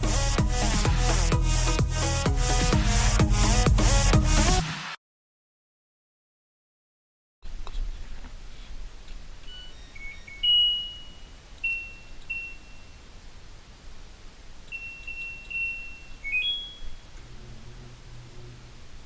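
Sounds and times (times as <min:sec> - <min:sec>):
control panel beeps: 0:09.5 - 0:12.9, 0:14.7 - 0:17.0
low hum: 0:16.9 - 0:19.0.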